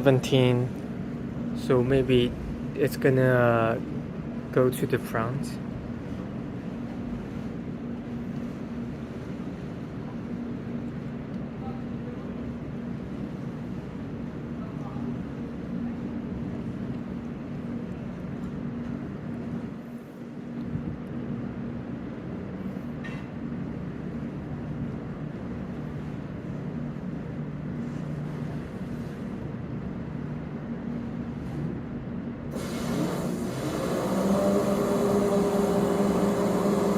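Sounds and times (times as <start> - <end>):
ship machinery drone: 0.0 - 36.9.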